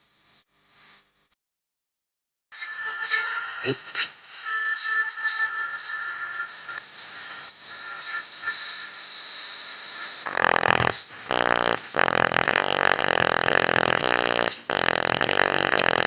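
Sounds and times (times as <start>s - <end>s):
damaged loudspeaker rasping buzz: 10.1s - 16.0s.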